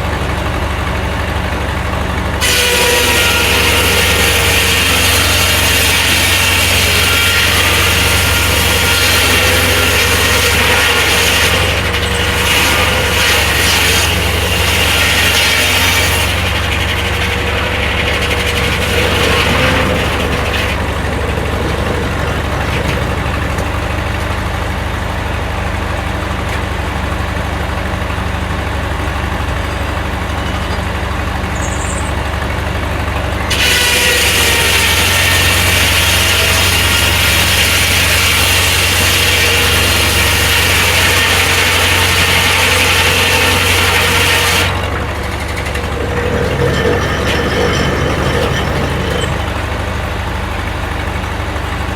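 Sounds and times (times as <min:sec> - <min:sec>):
sawmill engine running: 0:00.0 - 0:51.9
saw blade cutting log: 0:02.3 - 0:24.8, 0:33.4 - 0:51.2.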